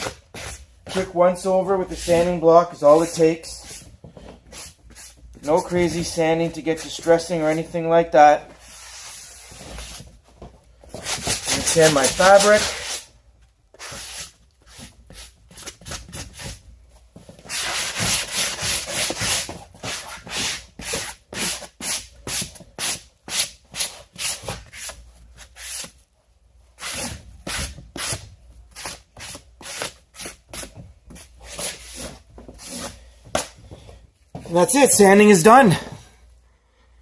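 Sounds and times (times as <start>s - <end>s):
sanding block rubbing fabric: 11.1s - 13.1s, 17.5s - 24.9s.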